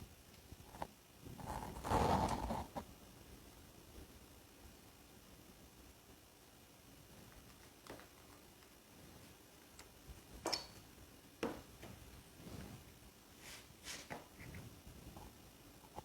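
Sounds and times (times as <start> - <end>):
faint clicks and knocks of parts: 7.2 - 12.2.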